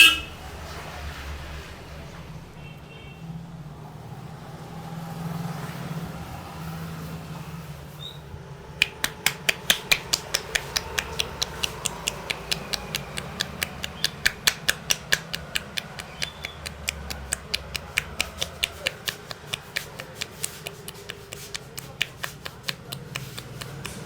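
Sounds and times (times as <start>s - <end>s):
low traffic hum: 0.0s - 24.0s
hands slapping in massage: 8.8s - 24.0s.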